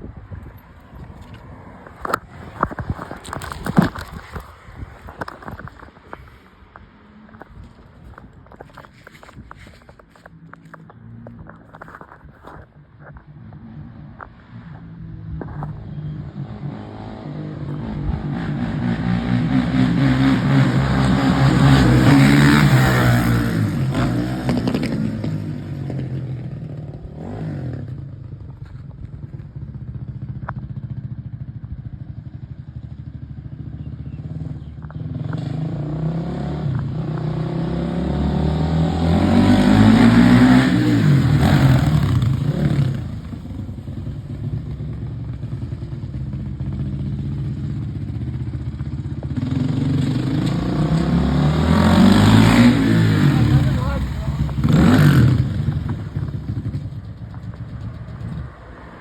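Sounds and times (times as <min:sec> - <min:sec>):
dirt bike engine passing by: 0:13.4 - 0:59.0.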